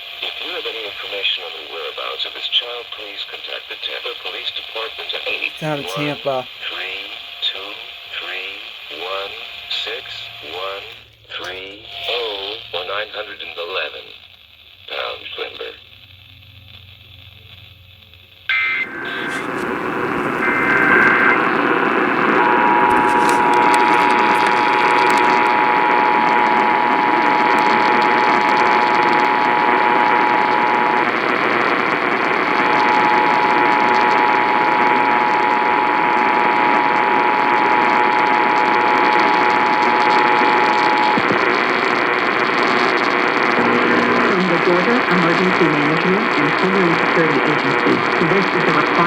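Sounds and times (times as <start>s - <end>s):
heavy radio static: 5.0s - 7.0s, 18.5s - 49.0s
two-tone attention signal: 18.5s - 29.0s, 43.6s - 46.0s
data burst tone: 18.5s - 49.0s.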